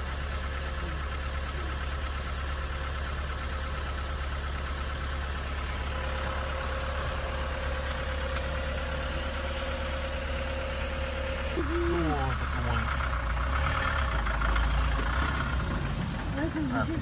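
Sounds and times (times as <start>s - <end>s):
vehicle engine low hum: 0.0s - 17.0s.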